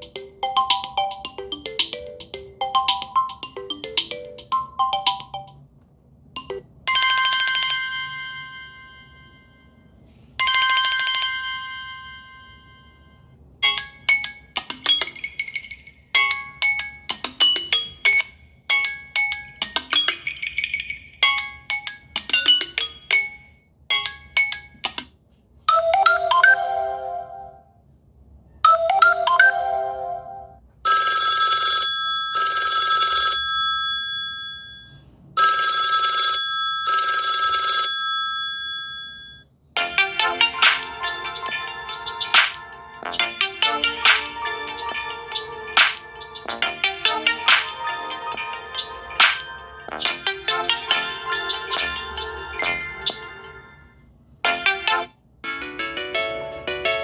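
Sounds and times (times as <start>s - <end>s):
bright phone chime: 0.0s - 5.6s, 28.7s - 50.0s
melodic phone ringtone: 0.0s - 5.6s, 6.4s - 24.8s, 25.7s - 27.6s, 28.7s - 57.0s.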